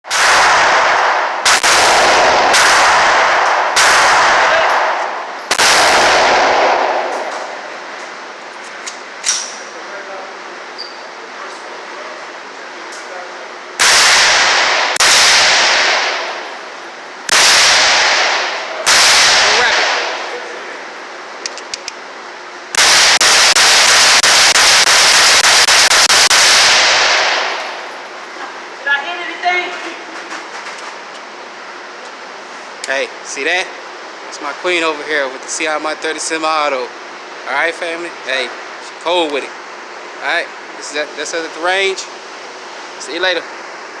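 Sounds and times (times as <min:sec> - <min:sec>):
rifle shots echoing: 0:00.1 - 0:07.6, 0:13.8 - 0:16.6, 0:17.3 - 0:20.4, 0:22.8 - 0:27.9.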